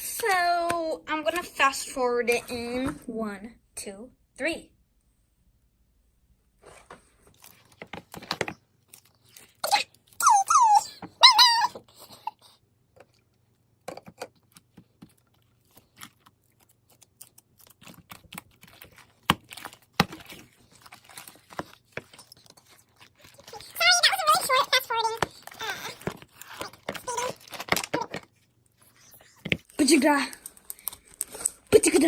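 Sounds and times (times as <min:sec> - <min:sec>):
sped-up squeaky voice: 0:09.6 - 0:11.8, 0:23.4 - 0:28.1.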